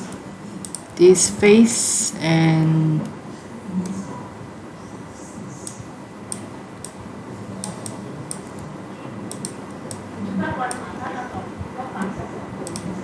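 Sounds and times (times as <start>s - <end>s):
computer mouse clicking: 0.0s - 0.9s, 5.6s - 7.0s, 7.6s - 8.7s, 9.3s - 10.0s, 12.0s - 13.0s
faint room hiss: 0.0s - 13.0s.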